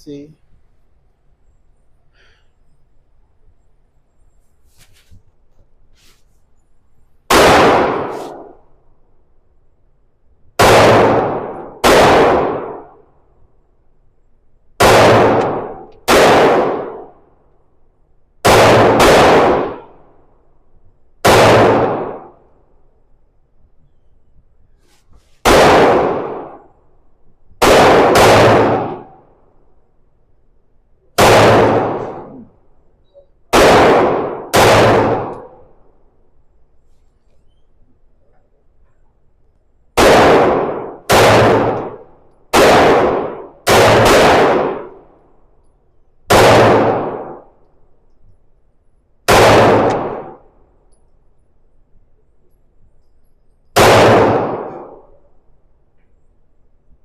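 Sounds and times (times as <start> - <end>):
pistol shots: 7.3 - 8.6, 10.6 - 13.0, 14.8 - 17.2, 18.4 - 20.0, 21.2 - 22.4, 25.4 - 26.7, 27.6 - 29.2, 31.2 - 32.4, 33.5 - 35.6, 40.0 - 45.0, 46.3 - 47.6, 49.3 - 50.5, 53.8 - 55.2.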